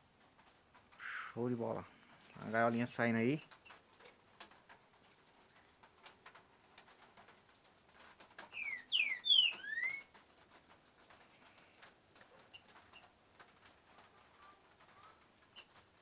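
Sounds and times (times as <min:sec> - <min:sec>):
faint clicks and taps: 0:03.4 - 0:08.6
songbird slurred whistles: 0:08.6 - 0:10.1.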